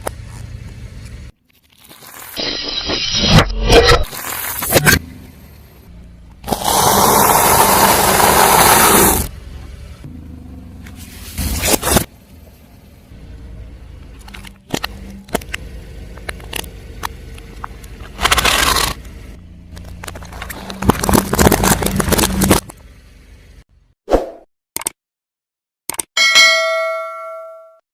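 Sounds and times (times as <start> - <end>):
car engine rumble: 0.0 - 1.4, 5.0 - 24.0
tyres crushing objects: 20.0 - 22.8.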